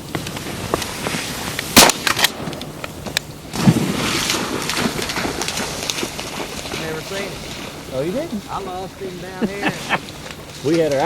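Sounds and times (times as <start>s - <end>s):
shotgun blast: 1.8s - 5.4s.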